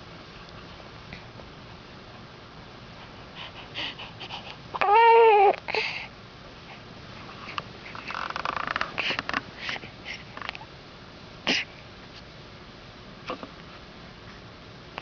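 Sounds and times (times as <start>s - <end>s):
breathy rustling noises: 2.9s - 4.8s, 5.6s - 10.6s
newborn baby crying: 4.8s - 5.7s.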